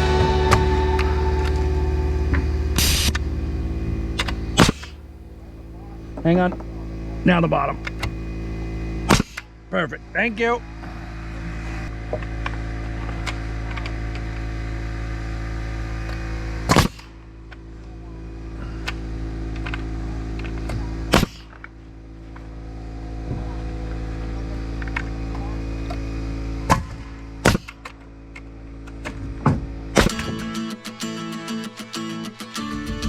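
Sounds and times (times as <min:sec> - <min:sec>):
air compressor humming: 0:00.0 - 0:33.0
nail gun firing: 0:04.2 - 0:05.0, 0:09.1 - 0:09.5, 0:16.7 - 0:17.1, 0:21.1 - 0:21.6, 0:26.7 - 0:27.9, 0:30.0 - 0:30.6.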